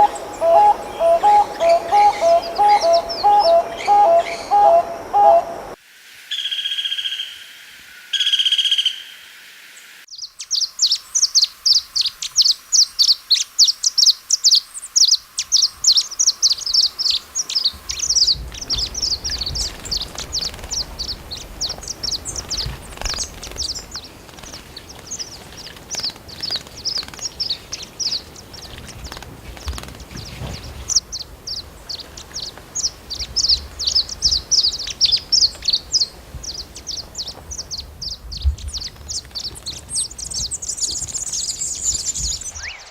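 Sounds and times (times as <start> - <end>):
rapid high bird chirps: 0.0 - 5.7, 10.1 - 42.9
whistled bird notes: 0.0 - 5.7, 6.3 - 24.1, 40.0 - 42.9
faint outdoor background noise: 0.0 - 42.9.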